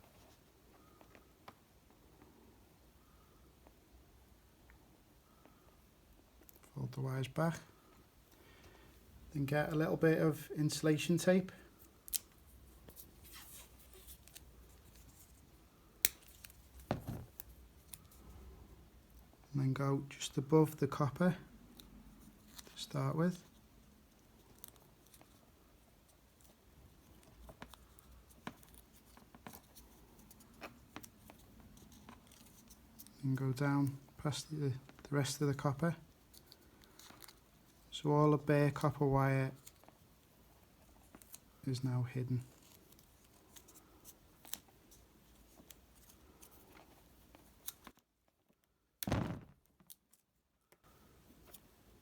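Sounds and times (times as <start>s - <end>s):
hands working wire and tape: 11.7s - 19.5s, 21.6s - 34.2s, 36.1s - 38.0s, 38.8s - 41.7s, 42.4s - 52.0s
loud heavy thump: 16.9s - 17.3s, 49.0s - 49.6s
insulation tape crackling: 49.0s - 49.7s.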